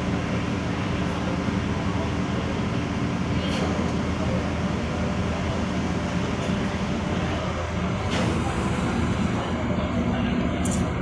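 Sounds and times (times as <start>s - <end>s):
ship engines humming: 0.0s - 11.0s.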